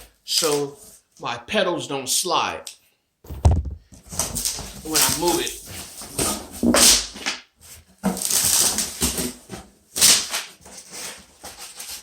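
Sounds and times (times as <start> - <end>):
packing material rustling: 3.3 - 12.0.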